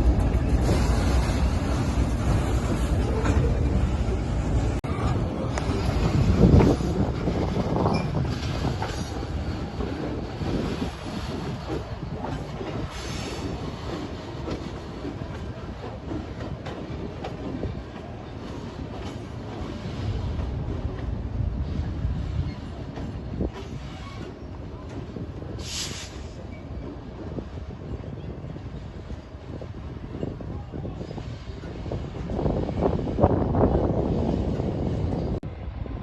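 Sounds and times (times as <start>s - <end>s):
train wheels clicking: 0.0s - 27.8s
freight train rumbling: 0.0s - 36.0s.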